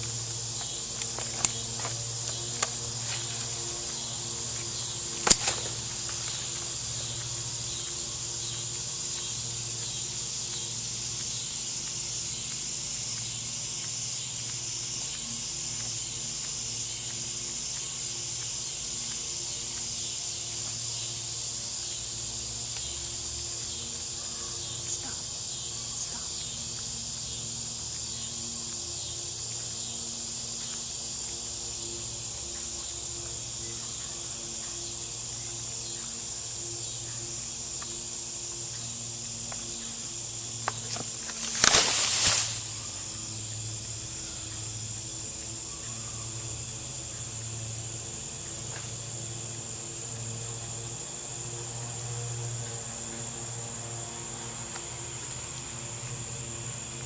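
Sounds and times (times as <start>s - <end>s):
crickets trilling: 0.0s - 57.0s
sudden loud hiss: 40.8s - 43.1s.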